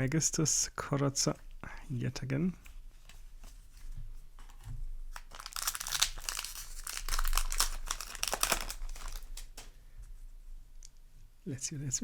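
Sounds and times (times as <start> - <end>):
foil wrapper crinkling: 4.4 - 9.7.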